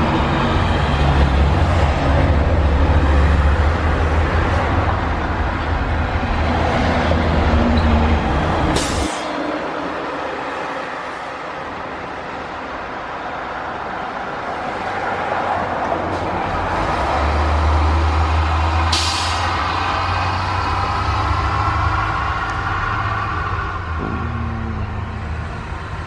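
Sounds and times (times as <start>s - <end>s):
bus diesel engines droning: 0.0s - 26.0s
air brake hiss: 8.8s - 9.4s, 18.9s - 19.6s.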